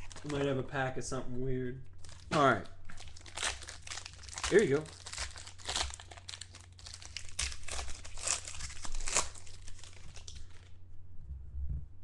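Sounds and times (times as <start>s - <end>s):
wrapper tearing and crinkling: 0.0s - 0.6s, 2.0s - 10.7s.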